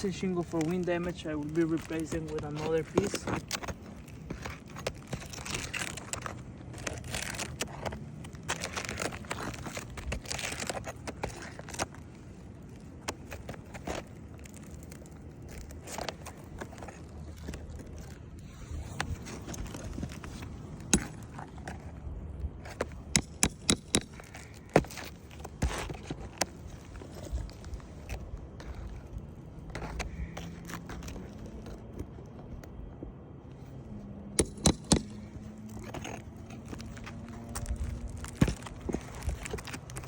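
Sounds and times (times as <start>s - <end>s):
scraping on shingles: 0.0s - 32.9s, 33.5s - 40.0s
hand tools tapping on roof shingles: 0.5s - 7.4s, 20.8s - 21.3s, 22.8s - 26.5s, 34.4s - 35.3s, 37.5s - 40.0s.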